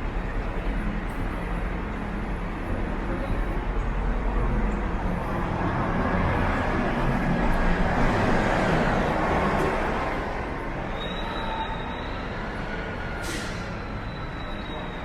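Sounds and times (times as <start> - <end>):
cars driving past: 4.2 - 14.4.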